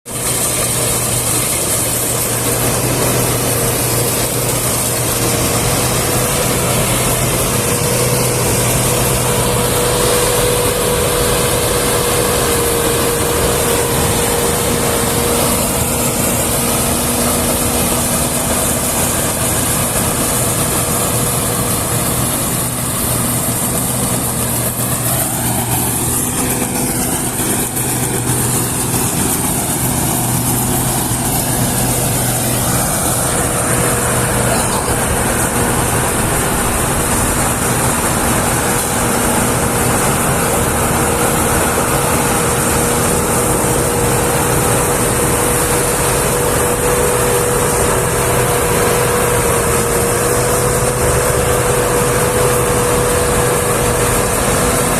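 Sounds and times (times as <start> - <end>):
combine harvester running: 0.1 - 54.9.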